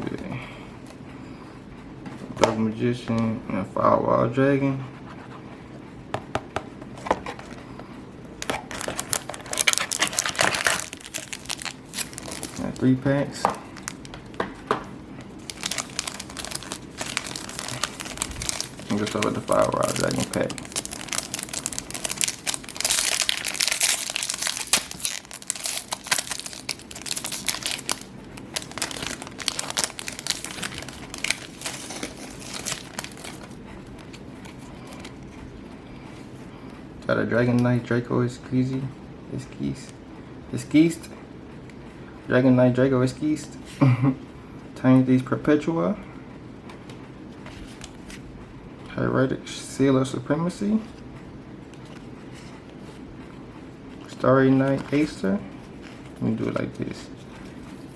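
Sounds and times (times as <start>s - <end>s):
foil packs crinkling: 8.4s - 35.2s, 54.0s - 57.9s.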